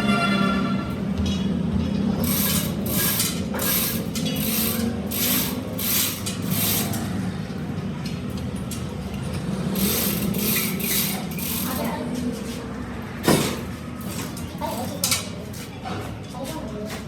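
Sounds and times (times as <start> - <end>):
steady machine hum: 0.8 - 12.1.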